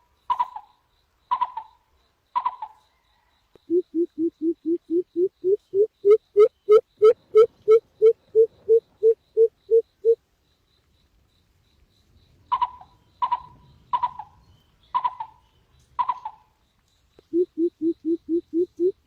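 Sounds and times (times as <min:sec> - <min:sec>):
bird hooting notes: 0:03.7 - 0:10.2, 0:17.3 - 0:19.0
sharp high bird calls: 0:03.7 - 0:10.2.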